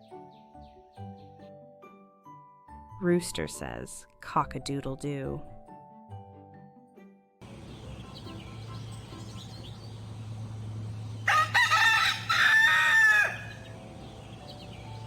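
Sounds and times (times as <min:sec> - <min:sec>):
rooster crowing: 0:11.2 - 0:13.7.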